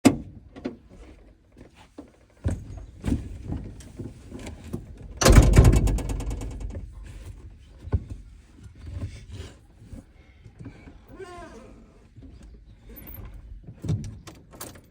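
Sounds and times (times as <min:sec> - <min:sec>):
loud burst with rapid rattle: 0:05.2 - 0:06.8
knocks and thunk in car: 0:05.2 - 0:08.2.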